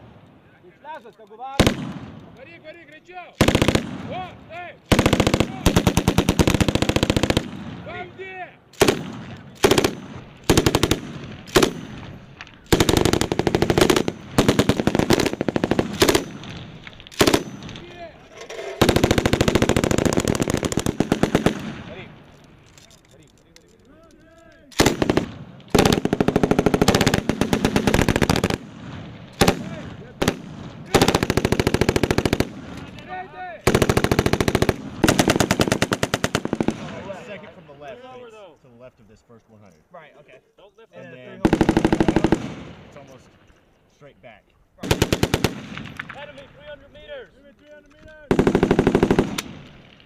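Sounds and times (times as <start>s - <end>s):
machine gun firing bursts: 3.4s - 4.1s, 4.9s - 7.6s, 8.8s - 17.8s, 18.8s - 21.8s, 24.8s - 32.7s, 33.6s - 36.9s, 41.4s - 42.8s, 44.8s - 46.0s, 48.3s - 49.8s.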